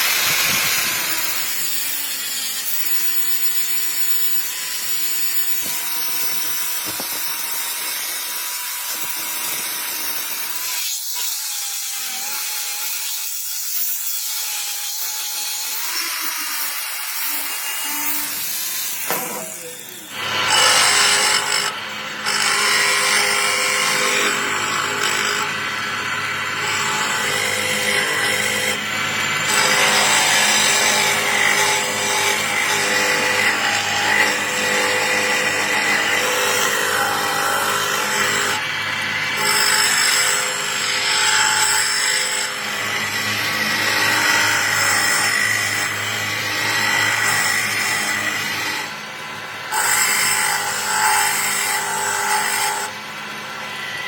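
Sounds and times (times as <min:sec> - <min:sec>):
power tool motor hum: 0:00.0 - 0:10.7.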